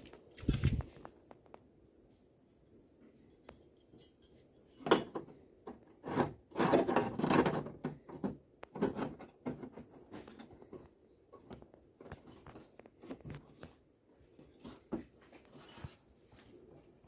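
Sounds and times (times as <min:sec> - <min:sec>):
rough scraping and rubbing: 0:00.4 - 0:01.1, 0:06.0 - 0:07.7, 0:14.4 - 0:16.4.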